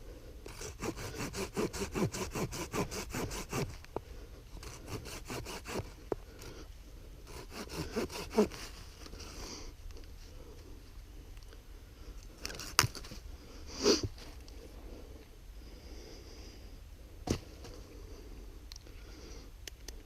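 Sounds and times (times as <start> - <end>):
hand saw cutting: 0.5 - 3.9, 4.6 - 6.0, 7.3 - 8.9.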